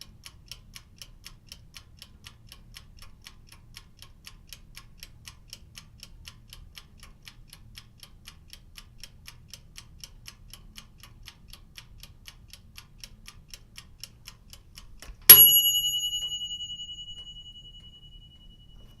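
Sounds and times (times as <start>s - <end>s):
mechanical timer ticking: 0.0s - 19.0s
timer bell ringing: 15.3s - 19.0s.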